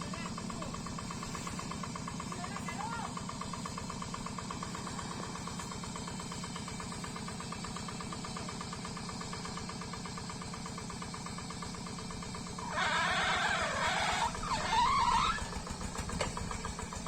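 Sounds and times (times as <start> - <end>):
diesel engine running: 10.8 - 17.0.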